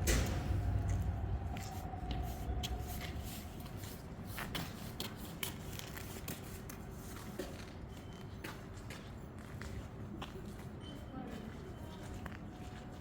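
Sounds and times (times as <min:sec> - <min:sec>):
steady low hum: 0:00.0 - 0:03.7.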